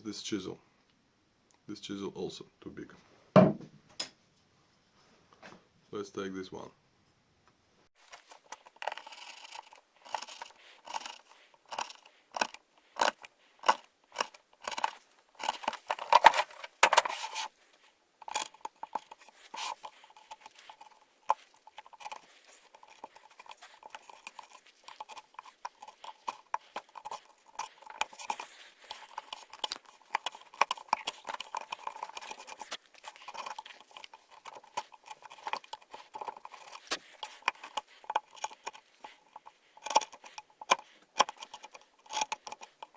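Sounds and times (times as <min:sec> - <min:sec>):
chisel shaving wood: 0:08.1 - 0:17.6, 0:18.2 - 0:42.9.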